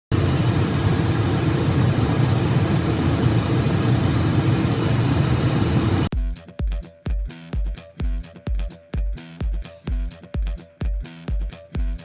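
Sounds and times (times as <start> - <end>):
jet engines rumbling: 0.1 - 6.1.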